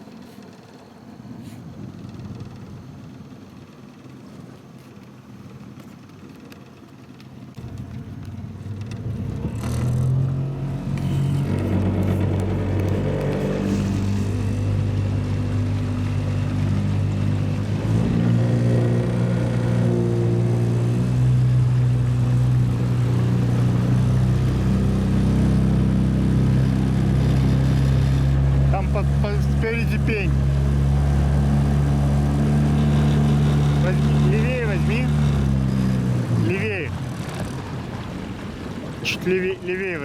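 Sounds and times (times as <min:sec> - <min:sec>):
boat motor running: 0:00.0 - 0:40.0.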